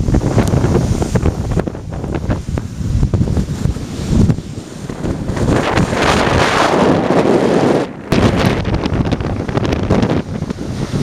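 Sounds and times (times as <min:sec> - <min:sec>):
rush of water: 0:00.0 - 0:11.0
waves breaking against quay: 0:00.0 - 0:11.0
wind buffeting microphone: 0:00.0 - 0:11.0.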